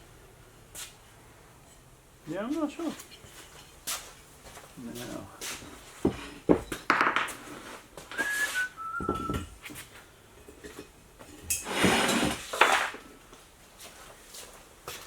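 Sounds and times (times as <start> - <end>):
descending whistled notes: 8.1 - 9.5.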